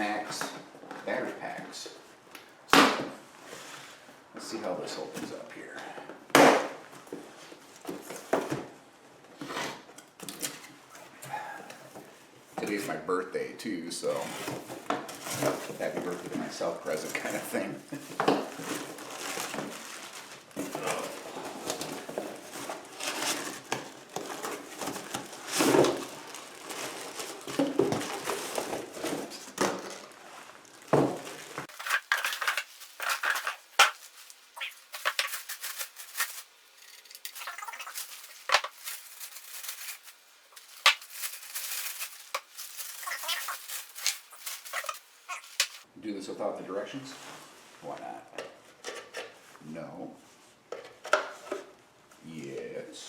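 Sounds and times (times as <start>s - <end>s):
packaging rustling and crinkling: 14.2s - 45.9s.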